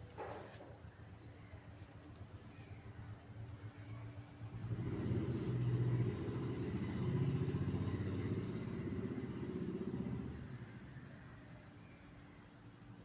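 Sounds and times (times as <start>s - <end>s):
vehicle engine running: 4.2s - 11.6s.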